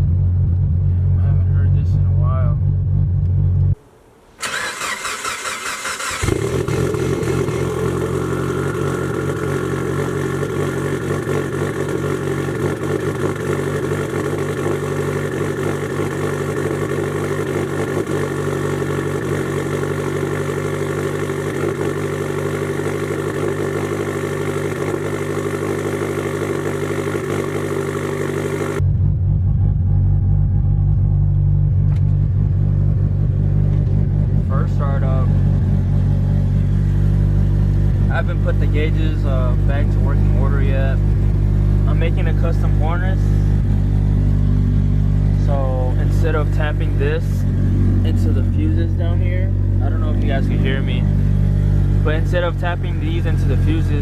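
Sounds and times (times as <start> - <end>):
car engine idling: 0.0 - 54.0
starter motor cranking: 4.4 - 28.8.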